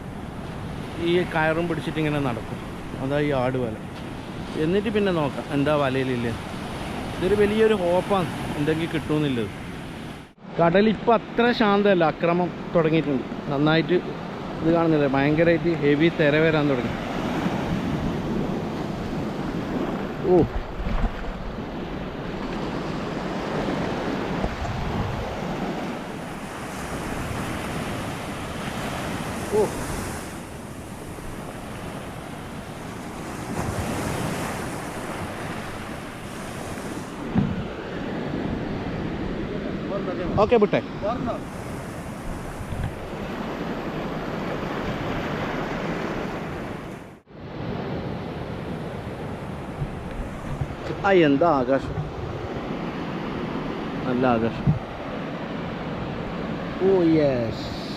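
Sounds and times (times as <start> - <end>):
sea surf breaking on beach: 0.0 - 57.9
wind rumbling on microphone: 16.6 - 56.9.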